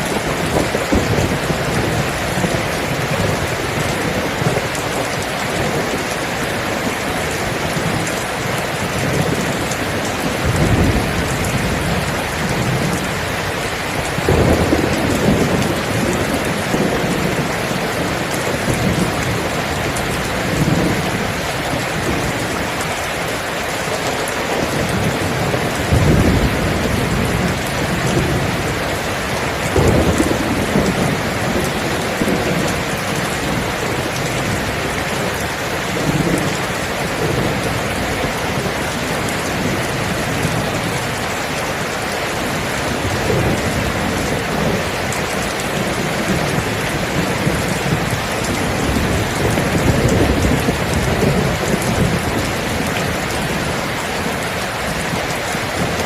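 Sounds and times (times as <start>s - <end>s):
thunder rumbling low: 0.0s - 6.0s, 7.0s - 22.5s, 24.5s - 35.4s
heavy rain falling: 0.0s - 56.0s.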